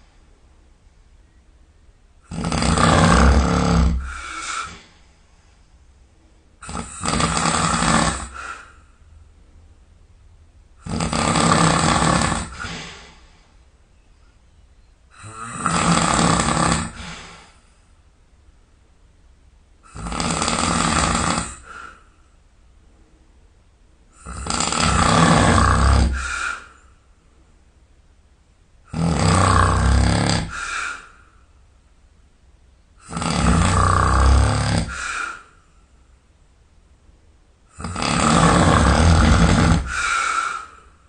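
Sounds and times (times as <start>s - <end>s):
quiet breathing: 0.0s - 1.4s, 2.2s - 9.5s, 10.7s - 18.2s, 19.8s - 27.6s, 29.2s - 31.8s, 32.9s - 36.3s, 37.6s - 41.0s
person snoring loudly: 2.2s - 4.8s, 6.6s - 8.7s, 10.8s - 13.0s, 15.1s - 17.4s, 19.8s - 21.9s, 24.2s - 26.7s, 28.9s - 31.2s, 33.0s - 35.6s, 37.7s - 40.8s.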